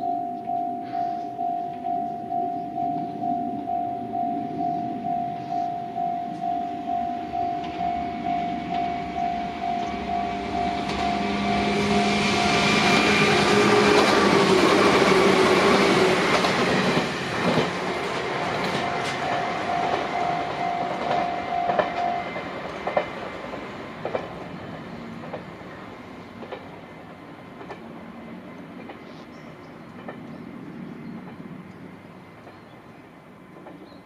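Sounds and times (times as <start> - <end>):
level crossing warning bell: 0.0 - 24.2
train wheels clacking over rail joints: 10.8 - 25.6, 26.3 - 26.8, 27.5 - 28.0, 29.9 - 30.4.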